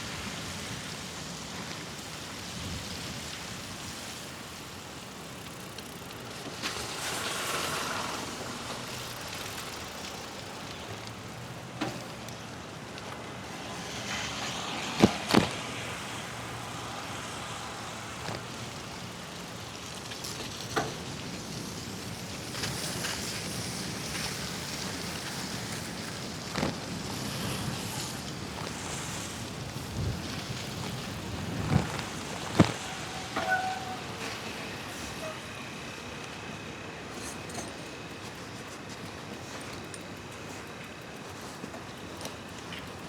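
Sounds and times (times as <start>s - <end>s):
bicycle tyres hissing on slush: 0.0s - 43.0s.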